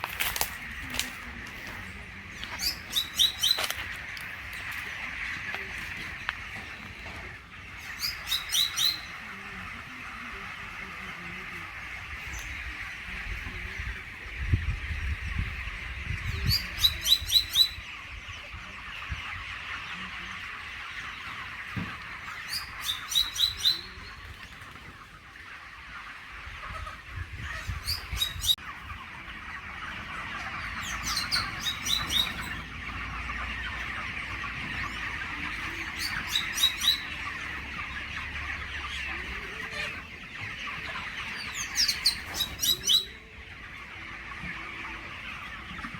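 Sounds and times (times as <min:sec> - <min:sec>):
background bird chatter: 0:00.0 - 0:45.9
small bird twittering: 0:02.5 - 0:03.8.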